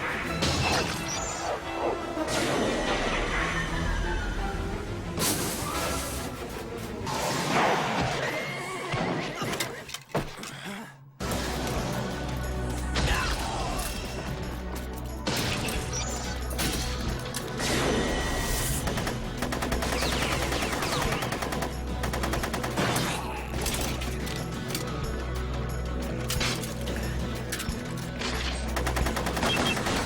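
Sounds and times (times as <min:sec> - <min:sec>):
action soundtrack music: 0:00.0 - 0:09.5, 0:11.2 - 0:30.0
gunfire: 0:17.6 - 0:24.1, 0:28.8 - 0:30.0.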